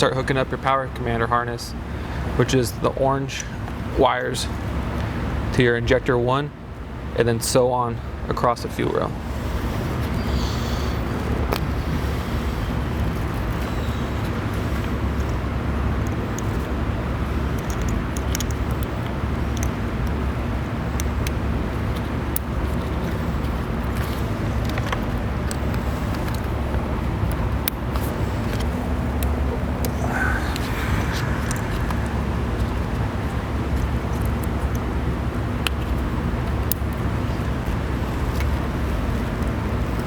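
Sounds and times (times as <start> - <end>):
low hum with rumble: 0.0 - 40.0
wiring connectors clicking: 17.5 - 20.2.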